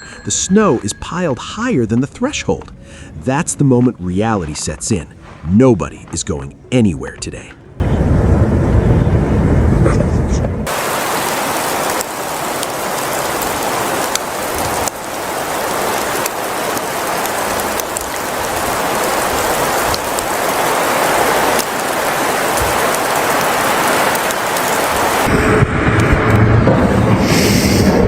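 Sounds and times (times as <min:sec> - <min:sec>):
low rumble: 0:00.0 - 0:10.7, 0:25.2 - 0:28.0
rain storm noise: 0:00.0 - 0:28.0
small sharp ticks: 0:11.2 - 0:19.2, 0:24.1 - 0:24.8.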